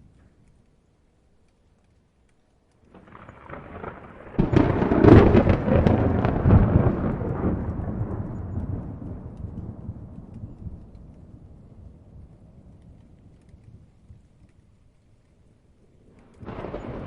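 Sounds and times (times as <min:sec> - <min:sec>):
thunder crack: 0:02.9 - 0:12.8, 0:16.4 - 0:17.0
thunder rumbling: 0:02.9 - 0:15.2, 0:15.8 - 0:17.0.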